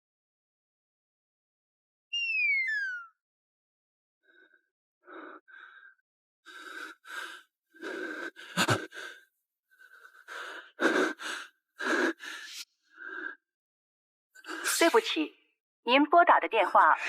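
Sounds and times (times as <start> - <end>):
person breathing hard: 4.3 - 13.4.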